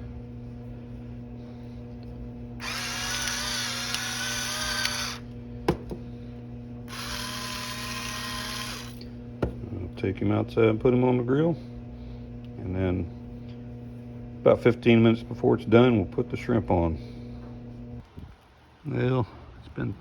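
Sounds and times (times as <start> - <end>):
electric grinders running: 2.6 - 5.4, 6.8 - 9.1.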